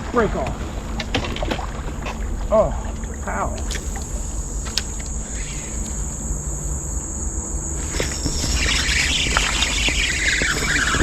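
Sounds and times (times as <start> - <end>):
high-pitched insect drone: 0.0 - 11.0
low rumble: 0.0 - 11.0
rough hiss: 3.4 - 11.0.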